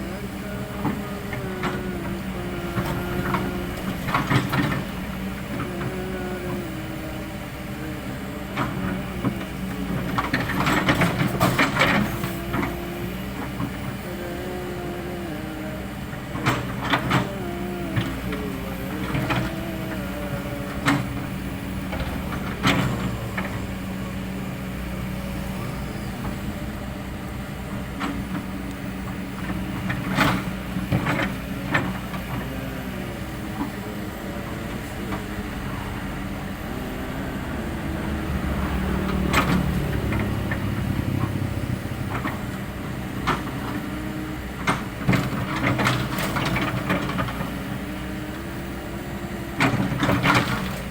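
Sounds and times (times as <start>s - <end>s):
excavator diesel engine: 0.0s - 50.9s.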